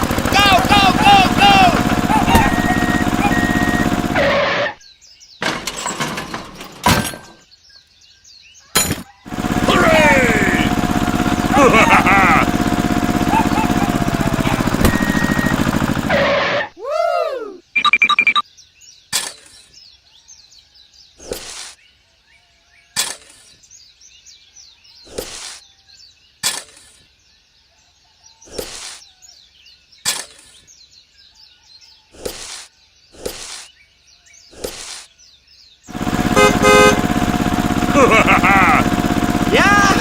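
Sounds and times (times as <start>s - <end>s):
small motor running: 0.0s - 4.7s, 9.3s - 16.3s, 35.9s - 40.0s
birds chirping: 0.0s - 40.0s
scraping or knocking strokes: 21.2s - 21.8s, 25.1s - 25.6s, 28.5s - 29.0s, 32.2s - 33.7s, 34.6s - 35.1s.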